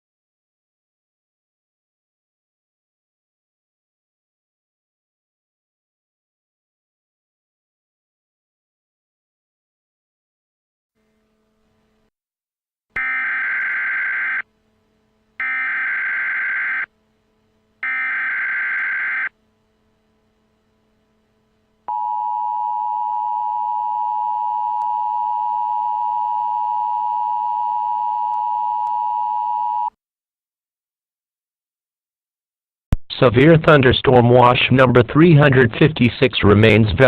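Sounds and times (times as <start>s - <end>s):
two-tone attention signal: 13.0s - 14.4s, 21.9s - 29.9s
digital data bursts: 15.4s - 16.9s, 17.8s - 19.3s.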